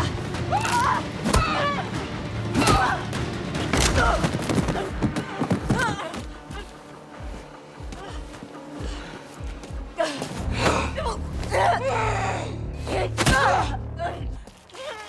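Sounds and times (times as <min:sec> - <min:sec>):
people yelling: 0:00.0 - 0:03.2
film score music: 0:00.0 - 0:15.0.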